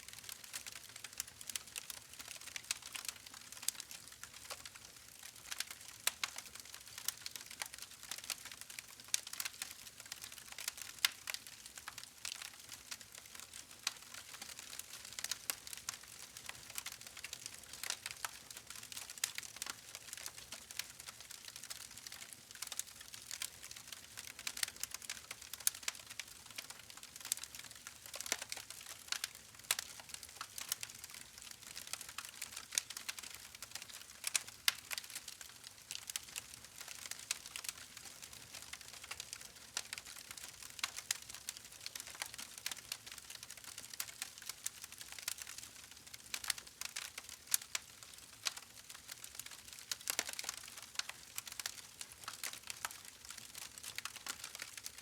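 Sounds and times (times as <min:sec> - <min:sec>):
campfire crackling and popping: 0:00.2 - 0:55.0.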